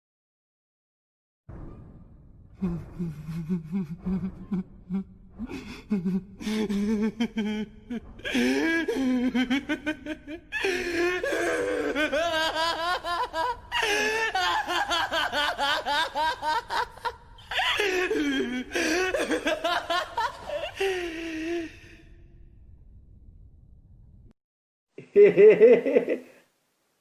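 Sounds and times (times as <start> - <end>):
person laughing: 2.6 - 21.9, 25.0 - 26.4.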